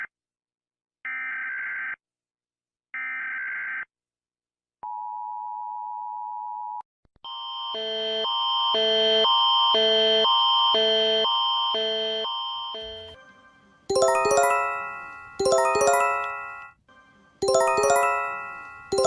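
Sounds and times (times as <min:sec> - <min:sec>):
multi-tone alarm switching pitch: 0:07.3 - 0:13.2, 0:13.9 - 0:16.8, 0:17.4 - 0:19.0.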